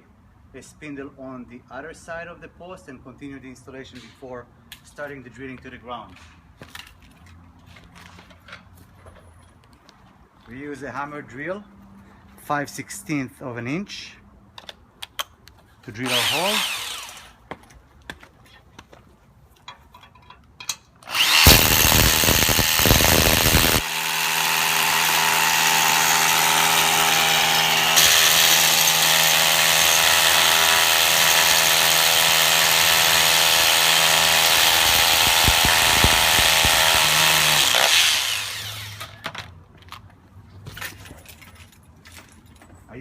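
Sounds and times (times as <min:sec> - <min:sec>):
hammer drill boring into ground: 0:16.0 - 0:17.3, 0:21.0 - 0:39.2
electric motor running: 0:16.1 - 0:17.3, 0:21.1 - 0:39.0.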